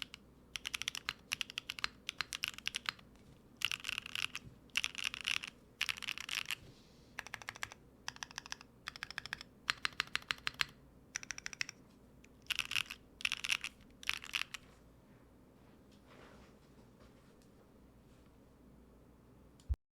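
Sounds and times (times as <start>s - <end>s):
mechanical keyboard typing: 0.0s - 3.0s, 3.6s - 6.6s, 7.2s - 11.8s, 12.4s - 14.6s.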